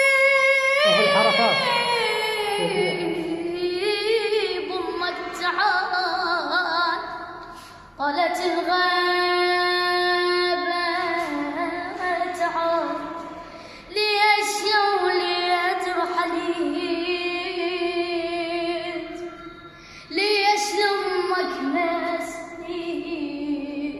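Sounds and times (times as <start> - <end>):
solo high voice chanting: 0.8 - 3.7.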